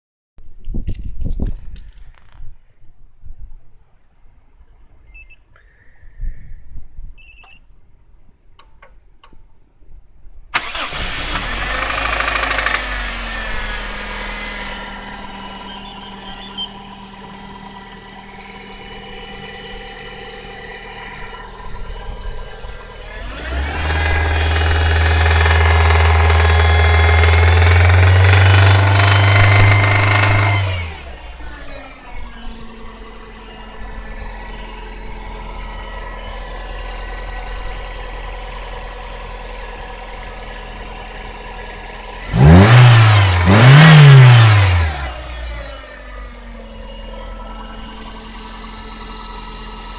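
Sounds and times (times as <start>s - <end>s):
car engine starting and idling: 10.5s - 49.9s.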